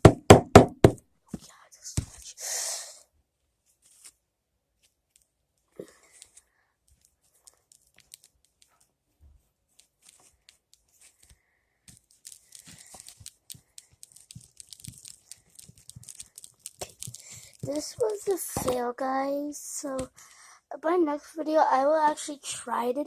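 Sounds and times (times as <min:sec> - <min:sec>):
sticky glue slime crackling: 0:12.1 - 0:18.6.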